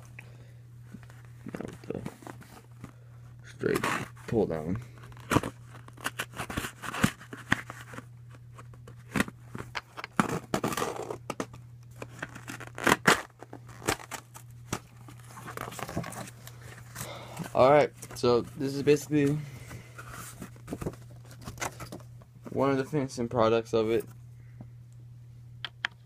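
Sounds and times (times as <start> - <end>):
steady low hum: 0.0 - 26.0
cardboard being torn: 10.1 - 11.2, 12.1 - 14.3.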